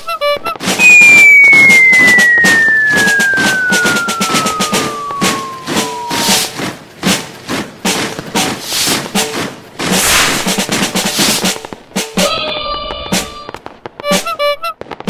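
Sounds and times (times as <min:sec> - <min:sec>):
rapid crackling pops: 0:00.6 - 0:15.0
whistle falling in pitch: 0:00.8 - 0:06.6.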